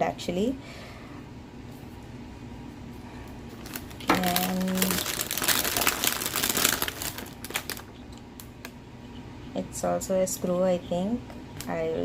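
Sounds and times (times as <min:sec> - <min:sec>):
plastic packaging crinkling: 0:03.5 - 0:08.7.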